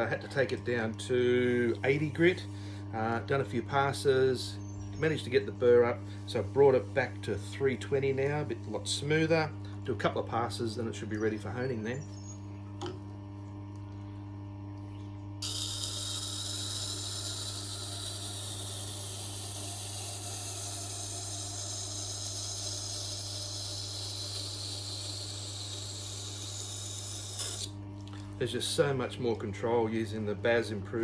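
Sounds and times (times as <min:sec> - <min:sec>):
knife grinding on wheel: 0:15.4 - 0:27.7
sharpening machine motor humming: 0:15.4 - 0:27.9.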